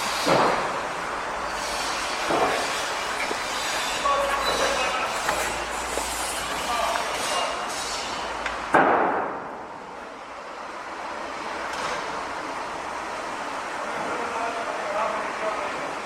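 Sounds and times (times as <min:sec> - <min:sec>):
short metallic squeals: 0:01.4 - 0:05.2, 0:06.6 - 0:08.3.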